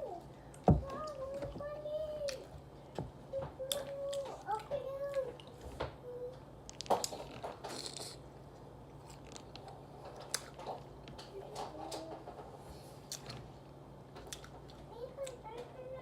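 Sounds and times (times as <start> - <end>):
person chewing: 8.9 - 11.1, 14.3 - 14.8.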